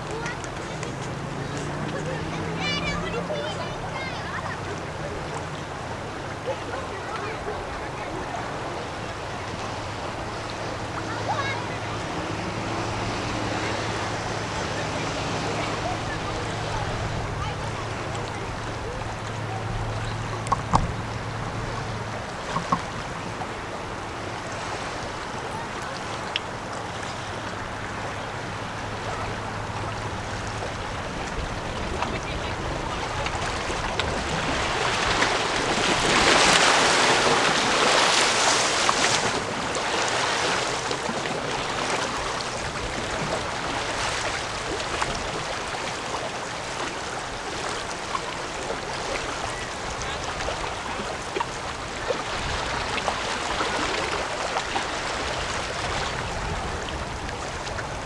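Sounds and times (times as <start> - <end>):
rushing water: 0.0 - 58.0
rushing wind: 7.5 - 58.0.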